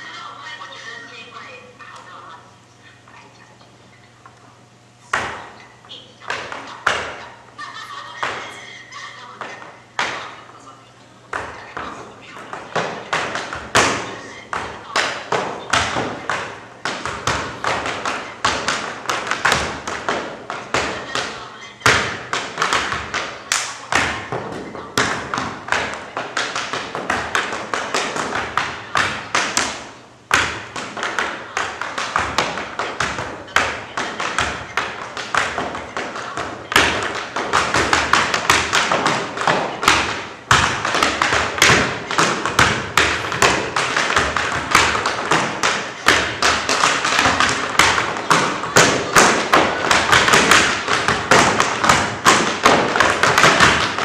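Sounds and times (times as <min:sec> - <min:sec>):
tap shoes on stage floor: 0:11.3 - 0:54.0.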